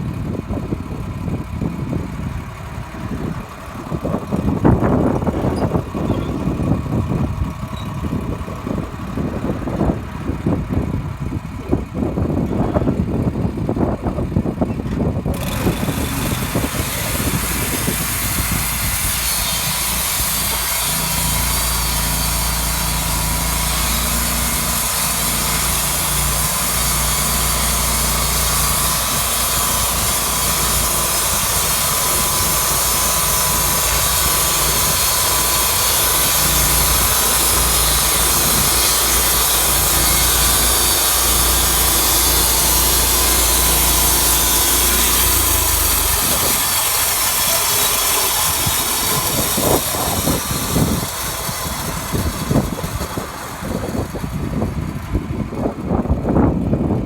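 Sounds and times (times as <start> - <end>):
sawmill engine hum: 0.0 - 57.0
saw blade cutting log: 15.3 - 55.2.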